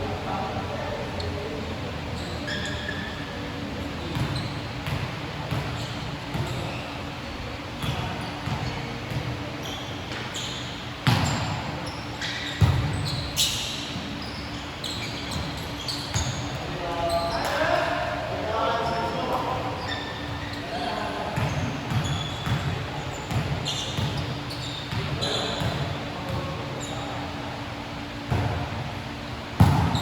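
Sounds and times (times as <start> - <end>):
sneakers squeaking: 0.3 - 30.0
basketball bouncing: 21.4 - 22.7, 29.6 - 30.0.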